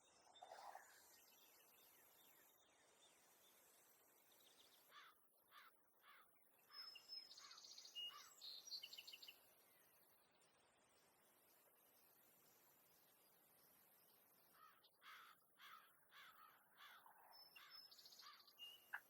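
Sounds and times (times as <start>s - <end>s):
faint bird calls: 0.0s - 3.7s, 4.4s - 9.4s, 14.3s - 19.0s
faint steady hiss: 0.0s - 16.8s.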